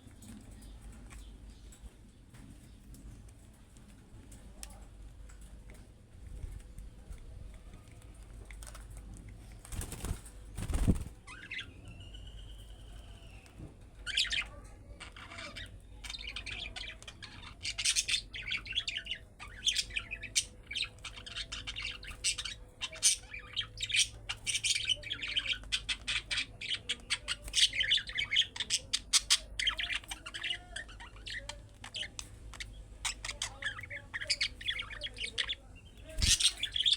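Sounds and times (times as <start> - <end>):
budgerigars chirping: 15.2 - 36.9.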